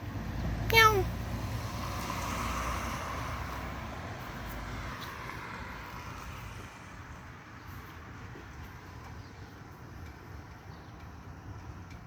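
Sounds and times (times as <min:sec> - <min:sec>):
vehicle passing by: 0:00.0 - 0:08.1.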